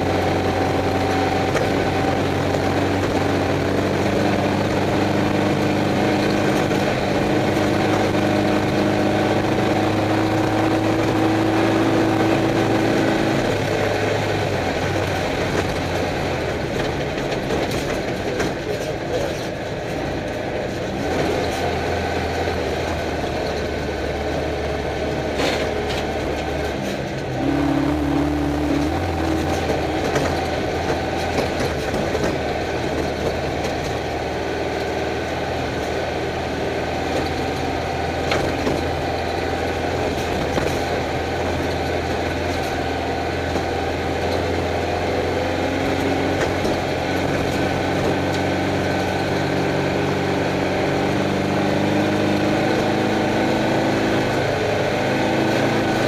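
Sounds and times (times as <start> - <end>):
car engine running: 0.0 - 56.0
car rattles and knocks: 14.9 - 21.6, 28.8 - 34.9, 36.9 - 44.8.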